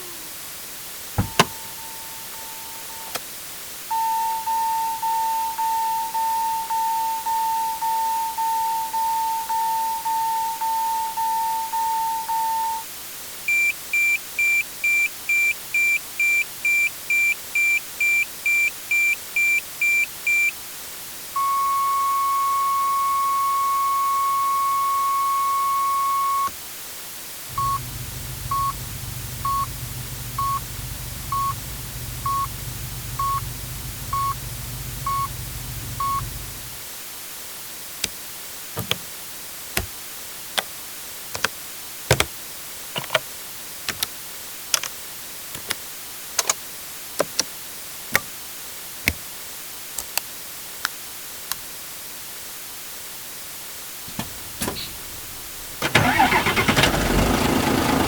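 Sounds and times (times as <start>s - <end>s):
vehicle switch clicks: 1.2s - 3.2s, 38.8s - 39.0s, 42.1s - 42.3s, 43.9s - 44.1s, 54.1s - 58.0s
electronic warning beeps: 21.4s - 26.5s, 27.5s - 36.7s
low hum: 27.5s - 36.8s
steady warning tone: 27.5s - 36.8s.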